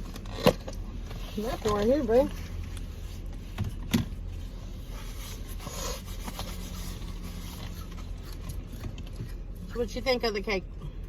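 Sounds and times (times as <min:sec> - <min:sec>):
steady low hum: 0:00.0 - 0:11.0
packaging scraping and rustling: 0:04.7 - 0:09.1.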